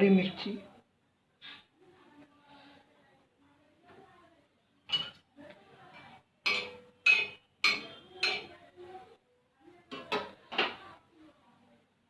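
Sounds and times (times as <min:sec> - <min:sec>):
dishes clinking: 0:04.8 - 0:05.3, 0:05.9 - 0:08.6, 0:09.9 - 0:10.8.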